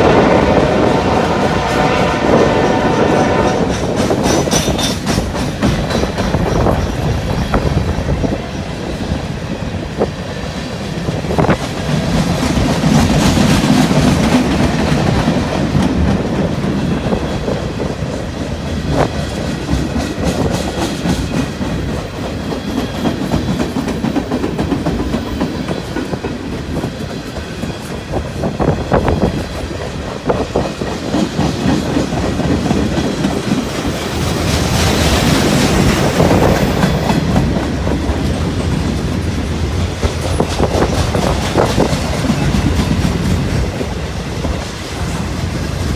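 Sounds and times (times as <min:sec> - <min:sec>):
train wheels rumbling on rails: 0:00.0 - 0:45.9
wheels clacking over rail joints: 0:03.2 - 0:08.6.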